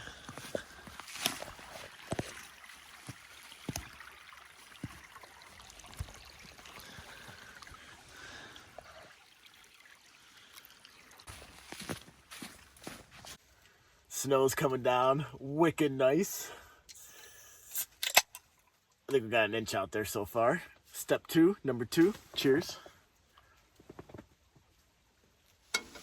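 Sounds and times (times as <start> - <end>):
rustling and shuffling: 11.3 - 13.6, 22.1 - 26.0.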